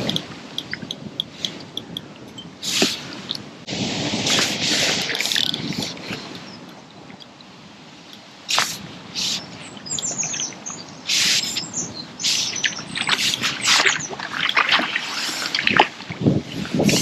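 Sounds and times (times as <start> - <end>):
loud rushing noise bursts: 3.7 - 5.5
small birds chirping: 8.6 - 14.2.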